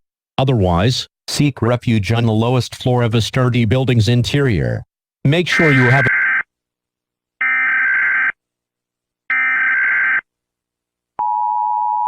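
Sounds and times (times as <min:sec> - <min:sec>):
harsh buzzing data bursts: 0:05.5 - 0:06.2.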